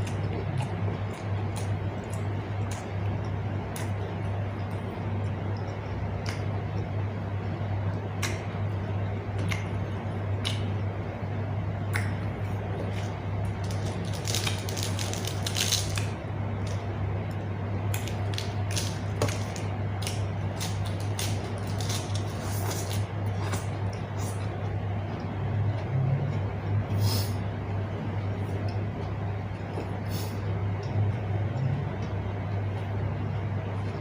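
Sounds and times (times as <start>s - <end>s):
person chewing and crunching: 0.0s - 6.4s, 12.8s - 16.8s, 17.9s - 24.5s
low hum: 0.0s - 34.0s.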